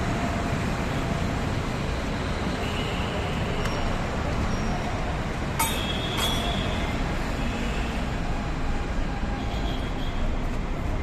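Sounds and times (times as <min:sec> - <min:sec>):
road traffic rumble: 0:00.0 - 0:11.0
sharp metallic clinks: 0:05.6 - 0:06.8.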